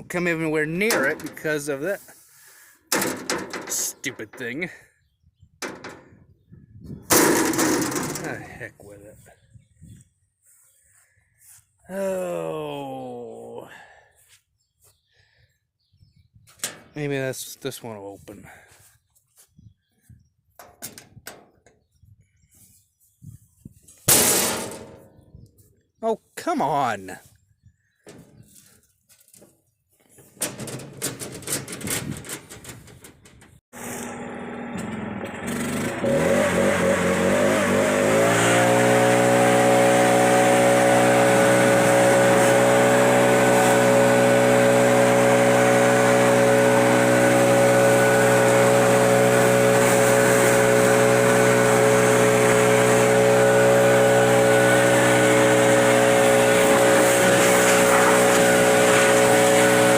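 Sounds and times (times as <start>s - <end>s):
leaf blower engine revving: 0.4s - 4.0s, 7.1s - 8.9s, 33.8s - 59.9s
clicks and rattles: 2.9s - 4.4s, 5.6s - 6.2s, 7.1s - 8.4s, 30.2s - 33.6s.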